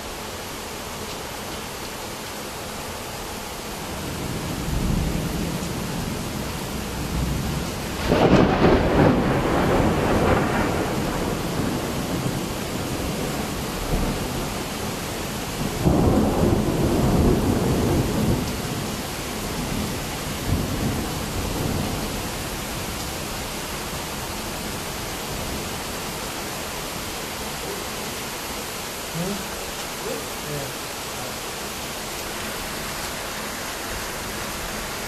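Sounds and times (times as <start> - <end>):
steady rain hiss: 0.0 - 35.0
thunder rumbling: 3.9 - 14.7, 15.6 - 22.9.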